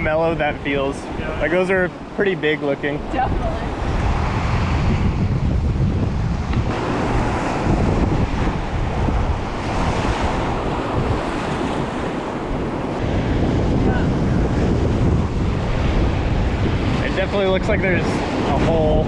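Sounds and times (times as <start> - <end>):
wind buffeting microphone: 0.0 - 19.0
river water rushing: 6.7 - 14.0.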